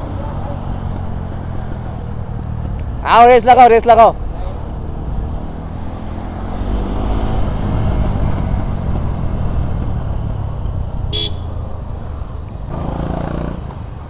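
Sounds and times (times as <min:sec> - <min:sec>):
motorcycle engine revving: 0:00.0 - 0:14.0
vehicle horn toot: 0:11.1 - 0:11.6.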